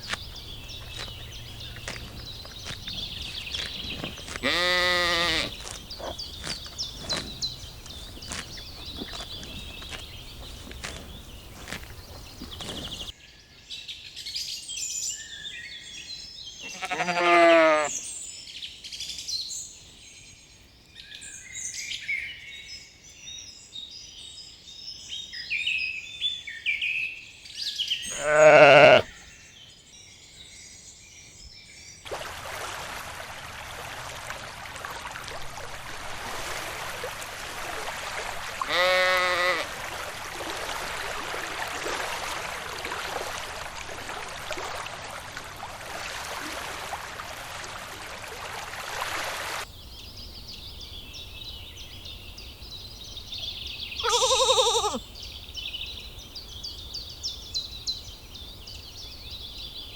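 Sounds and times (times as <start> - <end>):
lamb bleating: 4.3 - 6.1, 16.6 - 17.9, 28.1 - 29.1, 38.6 - 39.7, 54.0 - 55.0.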